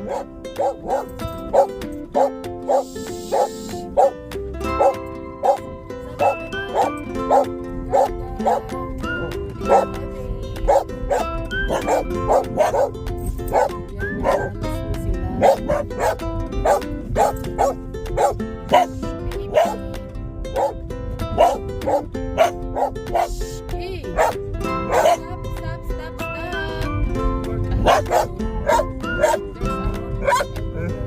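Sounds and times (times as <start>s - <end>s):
dog barking: 0.0s - 4.2s, 4.8s - 5.6s, 6.2s - 8.6s, 9.6s - 9.9s, 10.7s - 14.5s, 15.4s - 18.9s, 19.5s - 19.8s, 20.6s - 20.8s, 21.4s - 23.3s, 24.2s - 25.2s, 27.8s - 29.4s, 30.2s - 30.9s
background music with held notes: 0.0s - 31.0s.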